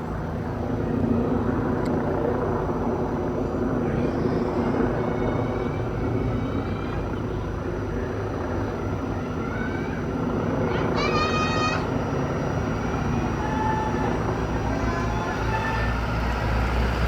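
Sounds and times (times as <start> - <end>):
race vehicle engines droning: 9.4 - 17.0.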